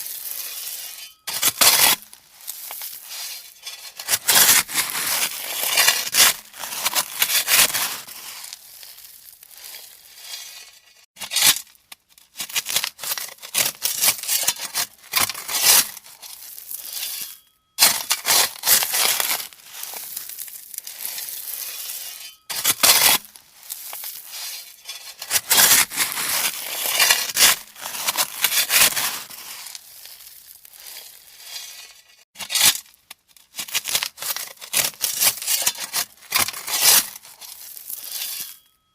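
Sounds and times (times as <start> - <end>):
shovel scraping into gravel: 0.0 - 11.7, 12.4 - 32.8, 33.6 - 38.7.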